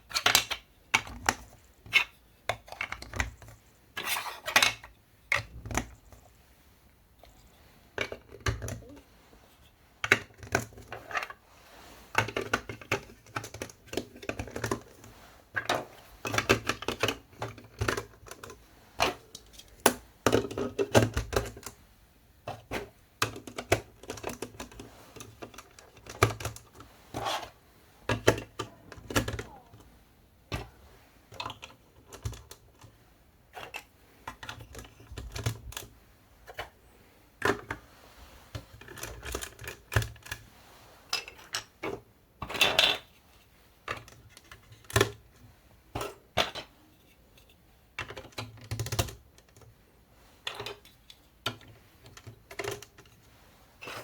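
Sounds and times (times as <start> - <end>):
plastic pieces clicking and clattering: 0.1 - 6.0, 12.2 - 21.7.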